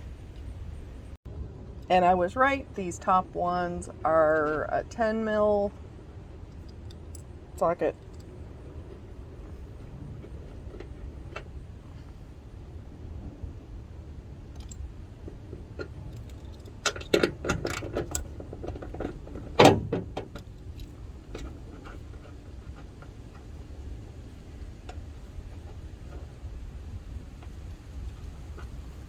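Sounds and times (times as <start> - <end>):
metal tools clinking and clattering: 15.8 - 19.5.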